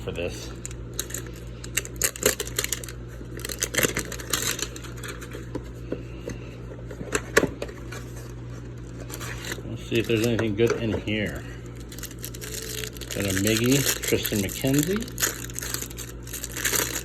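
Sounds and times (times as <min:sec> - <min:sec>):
plastic packaging crinkling: 0:00.5 - 0:05.5, 0:08.8 - 0:17.0
plastic packaging ripping: 0:00.6 - 0:05.3, 0:09.0 - 0:10.4, 0:11.2 - 0:17.0.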